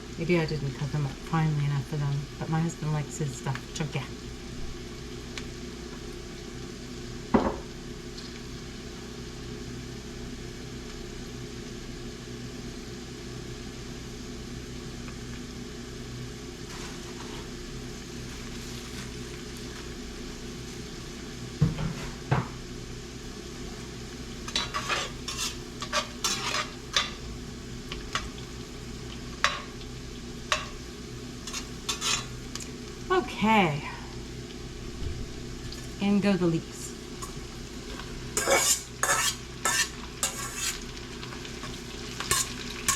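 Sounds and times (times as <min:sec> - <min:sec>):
steady hum: 0:00.0 - 0:40.9
vegetables sizzling in a pot: 0:00.0 - 0:42.9
spoon scraping and clinking pot: 0:24.5 - 0:27.2, 0:31.5 - 0:32.3, 0:38.4 - 0:40.8, 0:41.6 - 0:42.9.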